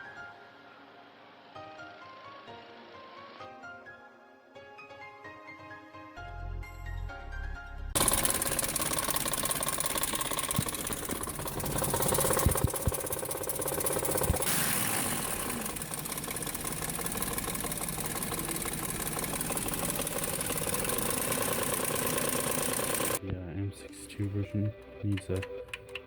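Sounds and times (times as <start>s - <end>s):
car engine idling with rattle: 8.0s - 23.2s.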